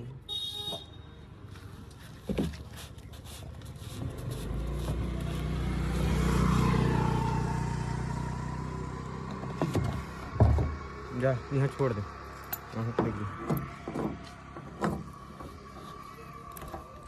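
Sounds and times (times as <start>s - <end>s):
vehicle engine passing by: 4.0s - 12.7s.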